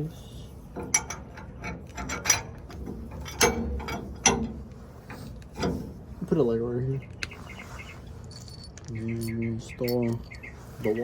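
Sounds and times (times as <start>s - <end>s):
metal clamp parts knocking: 0.8s - 6.0s.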